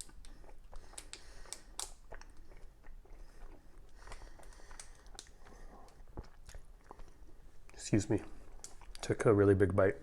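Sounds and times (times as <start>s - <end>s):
person chewing: 0.0s - 9.2s
mouth clicks and crackles: 0.0s - 9.4s.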